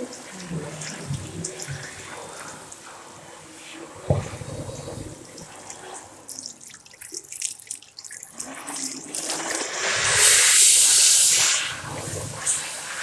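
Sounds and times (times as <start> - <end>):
tap water splashing into sink: 4.0 - 10.5.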